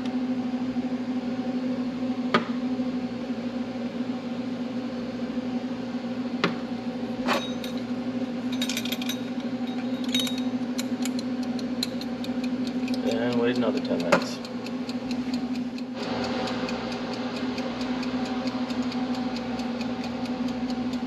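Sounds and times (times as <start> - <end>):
steady low hum: 0.0 - 21.0
light metallic clinks: 8.5 - 10.5.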